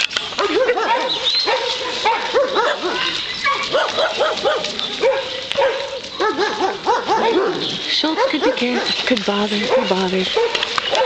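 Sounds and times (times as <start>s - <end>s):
dogs yipping and barking: 0.2s - 11.0s.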